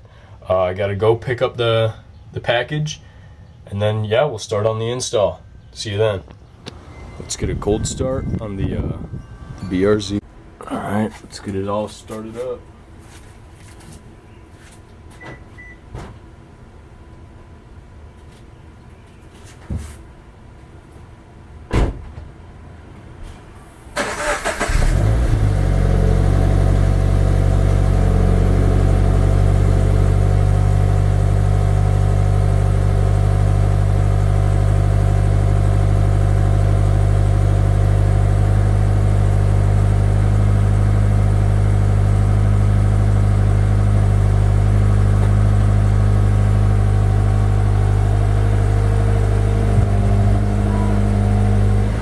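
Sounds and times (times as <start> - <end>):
car engine idling: 23.8 - 52.0.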